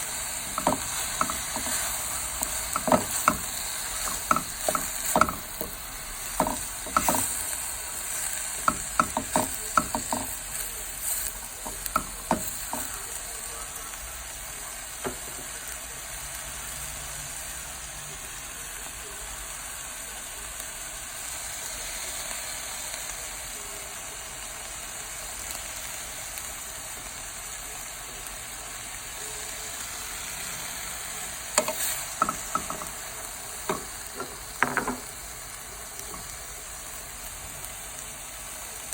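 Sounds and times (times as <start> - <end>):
vegetables sizzling in a pan: 0.0 - 38.9
spatula scraping a pan: 0.1 - 13.0, 31.6 - 33.0.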